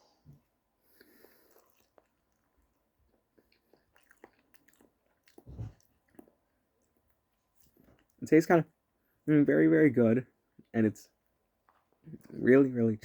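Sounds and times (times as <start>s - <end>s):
faint chewing mouth clicks: 0.9s - 8.2s, 11.6s - 12.4s
low mouth sound: 5.3s - 5.8s.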